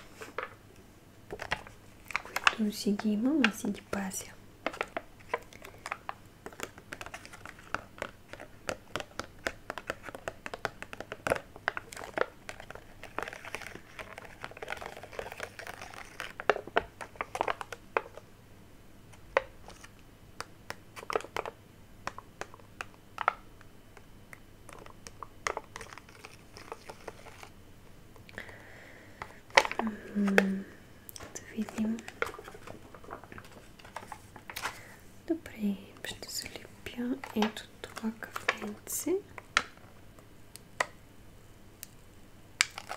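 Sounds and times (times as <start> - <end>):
sticker sheets crinkling: 1.3 - 18.2, 19.1 - 20.0, 20.7 - 23.4, 24.7 - 27.6, 29.2 - 39.8, 42.6 - 42.9.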